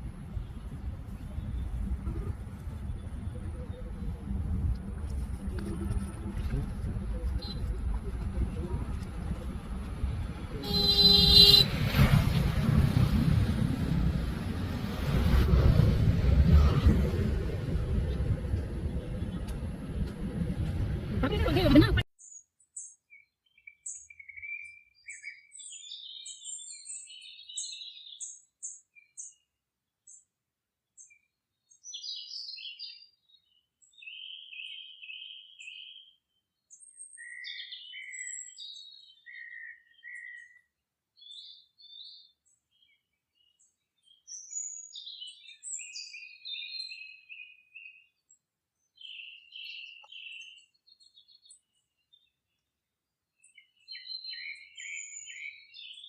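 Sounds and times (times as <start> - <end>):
small birds chirping and singing: 22.2 - 30.3, 30.9 - 56.0.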